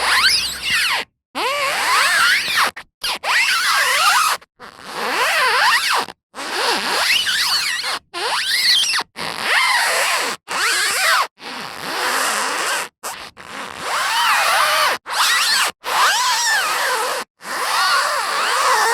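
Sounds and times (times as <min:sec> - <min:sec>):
car tyres squealing: 0:00.0 - 0:01.0.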